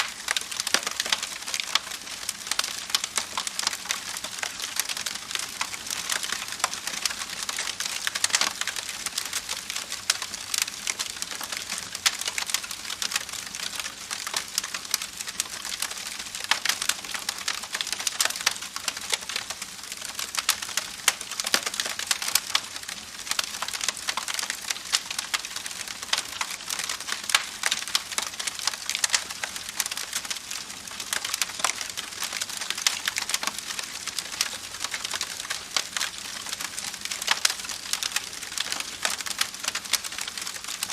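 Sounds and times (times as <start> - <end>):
campfire crackling: 0.0 - 40.9.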